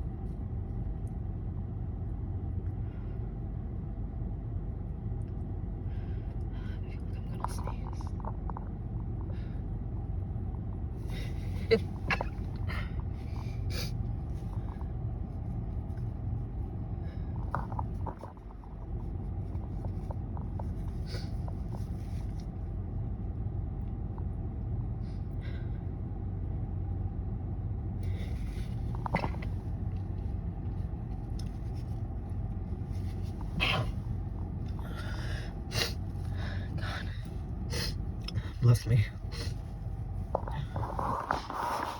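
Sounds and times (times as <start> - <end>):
steady low hum: 0.0 - 41.9
person sniffing: 33.5 - 34.0
stifled sneezes: 33.6 - 34.0.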